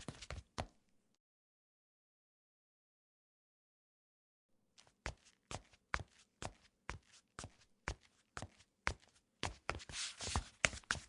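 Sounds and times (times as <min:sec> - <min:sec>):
soles scuffing: 0:00.0 - 0:00.7, 0:04.8 - 0:11.0
sneaker footsteps on tile: 0:00.0 - 0:00.8, 0:04.8 - 0:11.0.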